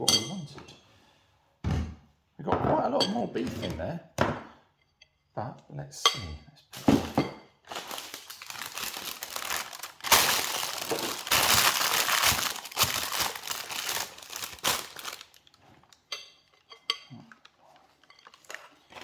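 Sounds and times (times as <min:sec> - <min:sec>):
crinkling and crunching of meat mixture: 0:07.6 - 0:16.1, 0:16.9 - 0:19.0.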